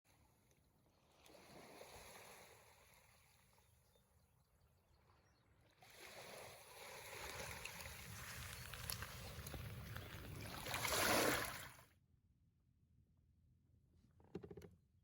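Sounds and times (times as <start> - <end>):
water lapping against kayak: 5.6 - 11.8.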